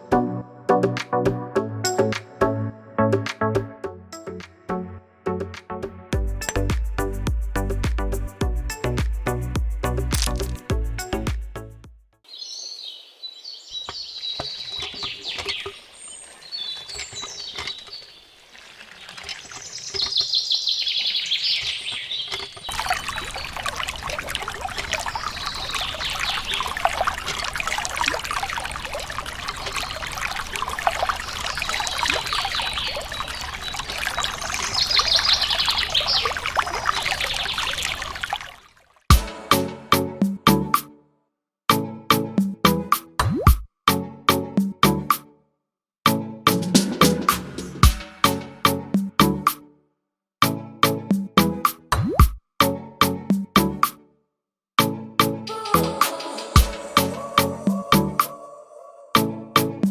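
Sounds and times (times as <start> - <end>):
water pouring and trickling: 6.4 - 11.2, 13.7 - 39.2
birds chirping: 12.3 - 38.6.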